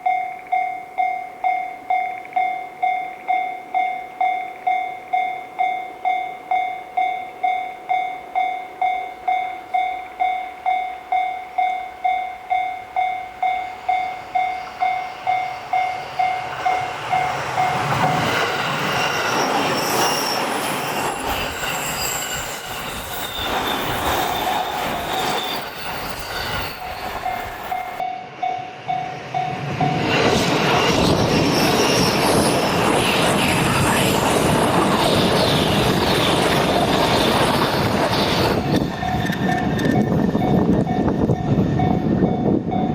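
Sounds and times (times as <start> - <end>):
level crossing bell ringing: 0.0 - 18.0, 25.9 - 30.0
train wheels rumbling on rails: 1.4 - 42.9.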